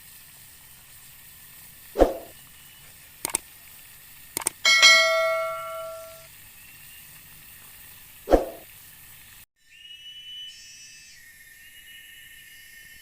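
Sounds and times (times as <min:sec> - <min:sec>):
light clicks: 0:03.2 - 0:03.4, 0:04.4 - 0:04.6
metallic bell-like strike: 0:04.7 - 0:06.2.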